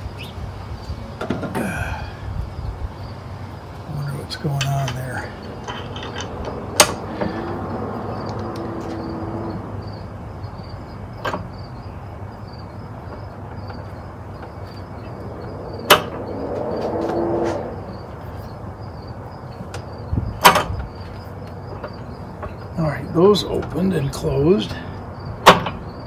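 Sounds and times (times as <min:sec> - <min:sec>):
steady low hum: 0:00.0 - 0:26.0
crank scraping: 0:04.5 - 0:09.1.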